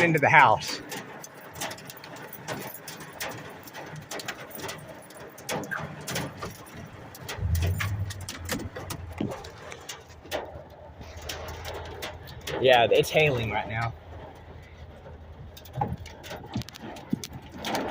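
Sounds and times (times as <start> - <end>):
hailstones tapping: 0.0 - 17.9
low steady hum: 7.3 - 12.4.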